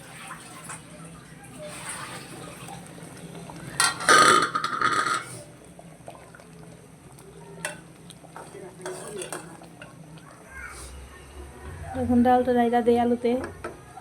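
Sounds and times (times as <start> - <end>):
metal pot and spoon clattering: 3.8 - 5.4, 7.6 - 10.0.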